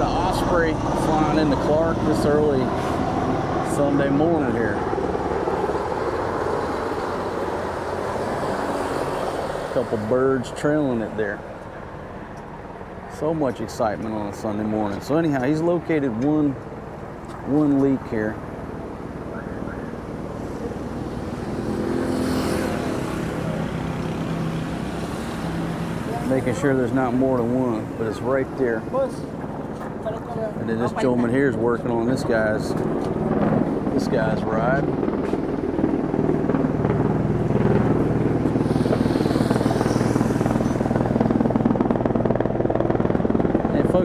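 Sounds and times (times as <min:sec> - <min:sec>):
vehicle engine passing by: 0:05.5 - 0:10.8, 0:19.5 - 0:29.4, 0:36.6 - 0:41.8
machine pulsing: 0:36.3 - 0:43.6.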